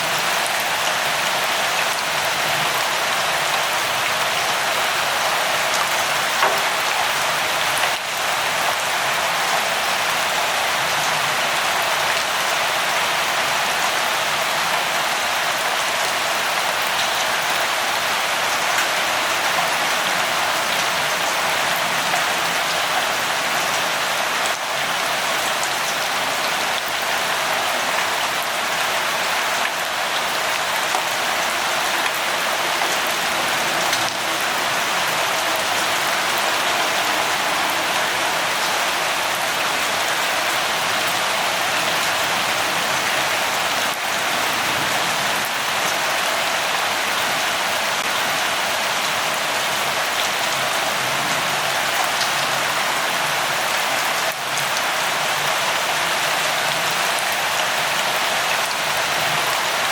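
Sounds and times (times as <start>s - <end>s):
steady rainfall: 0.0s - 59.9s.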